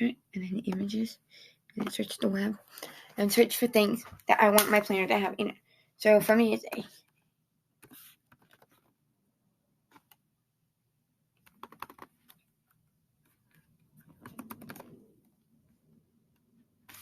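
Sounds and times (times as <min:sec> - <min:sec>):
typing on computer keyboard: 0:11.4 - 0:12.4, 0:14.0 - 0:15.0.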